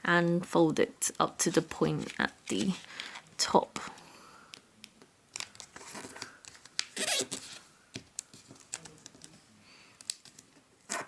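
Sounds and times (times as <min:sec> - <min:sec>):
paper rustling and crinkling: 0:05.3 - 0:07.6.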